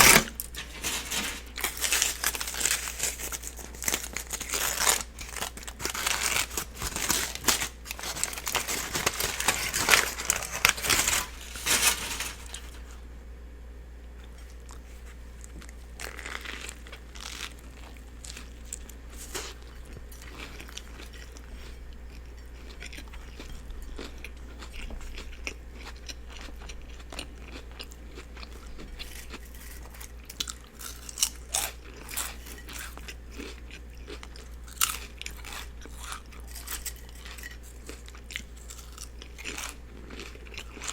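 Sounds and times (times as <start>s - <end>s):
person eating a sandwich: 0.0s - 12.9s
crunching and crinkling: 0.0s - 13.0s, 14.2s - 40.9s.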